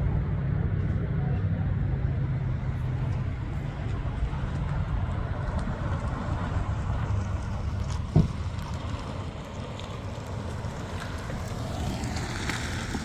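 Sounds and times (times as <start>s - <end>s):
wind buffeting microphone: 2.2s - 10.0s.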